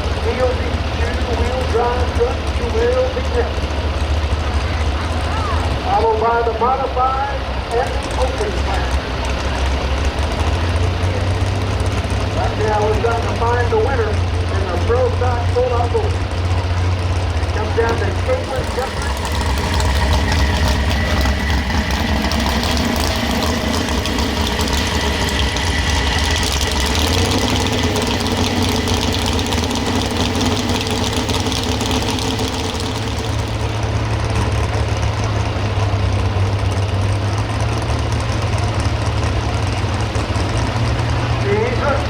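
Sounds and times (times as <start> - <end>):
truck engine running hard: 0.0 - 42.0.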